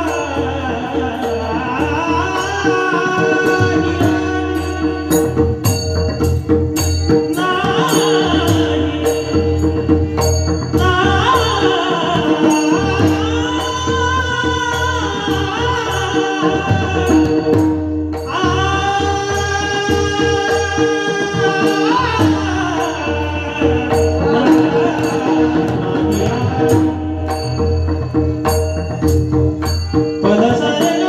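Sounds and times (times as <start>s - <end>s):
men singing devotional lines: 0.0s - 5.4s, 7.3s - 27.6s, 30.2s - 31.0s
drum strokes: 0.0s - 31.0s
jingling hand cymbals: 0.0s - 31.0s.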